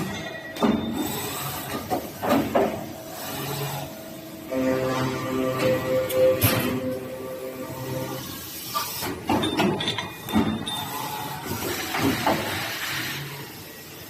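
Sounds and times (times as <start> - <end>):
high machine whine: 3.0 - 8.9
background music: 4.5 - 8.2.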